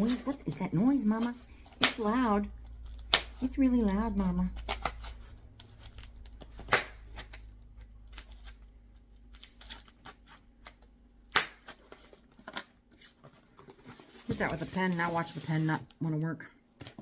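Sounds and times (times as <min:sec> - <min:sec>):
styrofoam snapping: 0:05.9 - 0:07.4.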